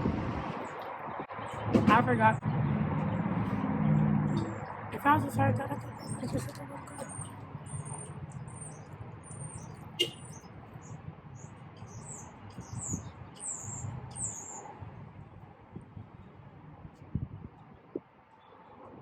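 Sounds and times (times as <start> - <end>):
high thin bird chirps: 6.0 - 14.7.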